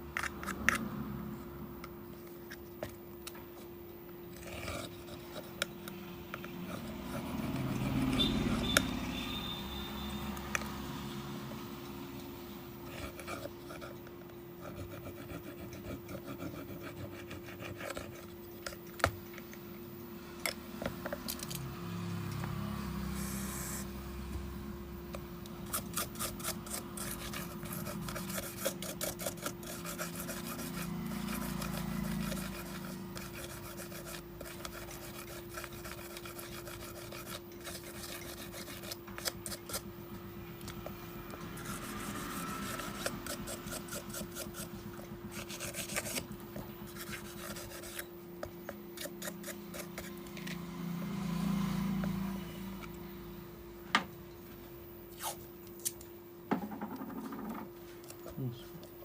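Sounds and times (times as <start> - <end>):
steady low hum: 0.0 - 59.0
hand tool scraping a phone: 4.4 - 5.8, 12.8 - 19.0, 25.6 - 39.9, 40.6 - 50.6.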